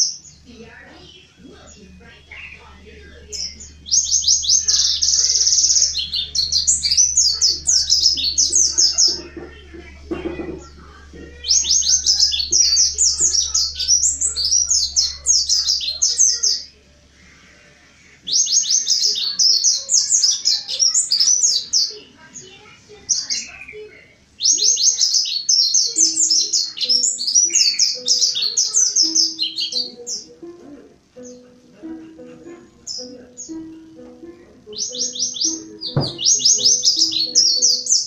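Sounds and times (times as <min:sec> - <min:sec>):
bird chirping twitters: 0:00.0 - 0:16.8, 0:18.2 - 0:38.0.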